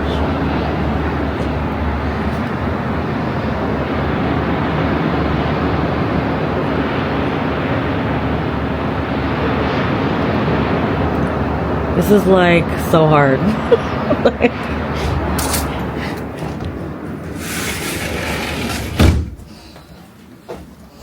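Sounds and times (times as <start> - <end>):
ocean surf: 0.0 - 16.1
wind: 0.0 - 21.0.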